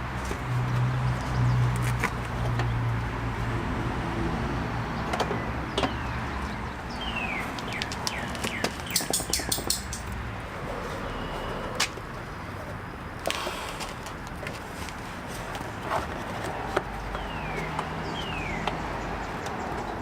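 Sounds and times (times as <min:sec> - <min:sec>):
bird chirping: 0:05.0 - 0:10.1, 0:17.0 - 0:20.0
clicks and taps of hand work: 0:07.5 - 0:10.2.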